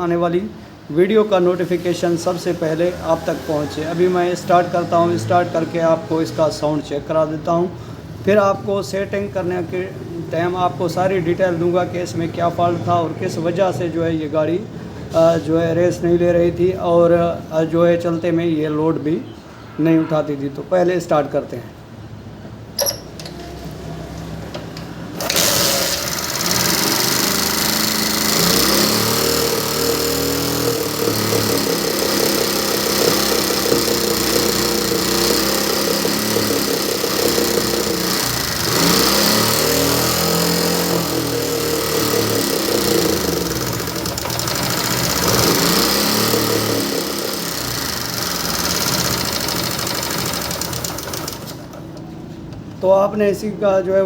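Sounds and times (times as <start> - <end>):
small motorcycle engine revving roughly: 1.2 - 6.9, 23.4 - 51.9.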